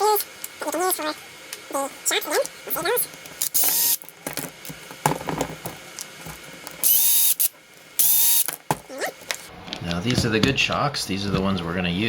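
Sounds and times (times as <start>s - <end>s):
electric screwdriver running: 3.4s - 4.1s, 6.8s - 8.5s.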